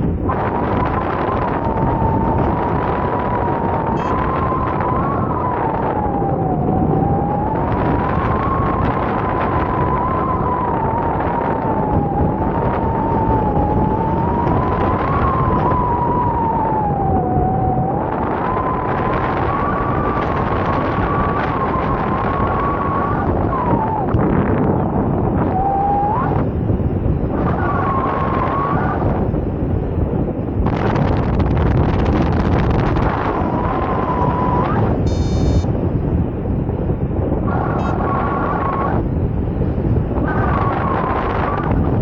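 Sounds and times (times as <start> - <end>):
wind on microphone: 0.0 - 42.0
thin whistling tone: 34.3 - 35.7.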